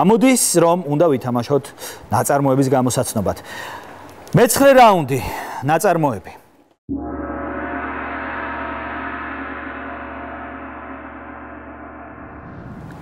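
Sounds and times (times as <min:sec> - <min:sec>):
gong-like chord: 0:06.9 - 0:13.0.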